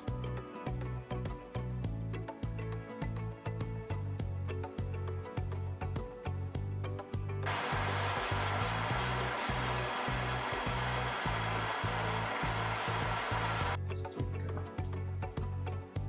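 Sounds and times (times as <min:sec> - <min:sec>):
background music with beat: 0:00.0 - 0:16.0
compressed air blast: 0:07.5 - 0:13.8.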